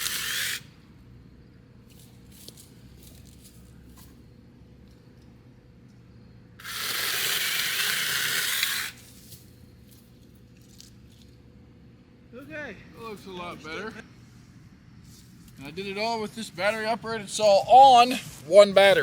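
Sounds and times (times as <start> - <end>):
mini chainsaw cutting wood: 0.0 - 0.7, 6.6 - 9.1.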